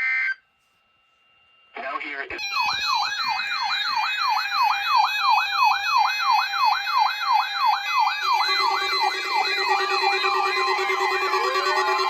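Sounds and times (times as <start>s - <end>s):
electronic siren yelping: 2.4s - 12.0s.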